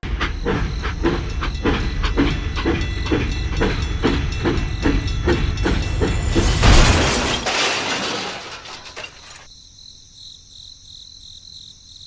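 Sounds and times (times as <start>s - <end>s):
loud crash: 4.8s - 9.5s.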